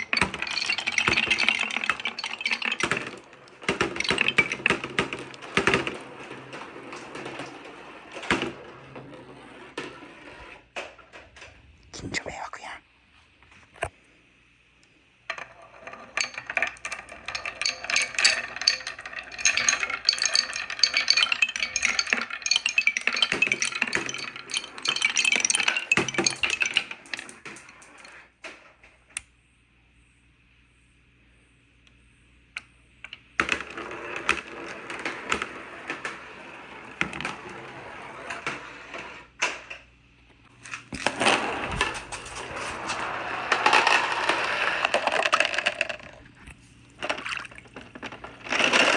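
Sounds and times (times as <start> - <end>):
marbles clattering down wooden run: 0.0 - 10.3, 15.3 - 28.2, 33.4 - 39.1, 40.9 - 46.2, 47.0 - 48.9.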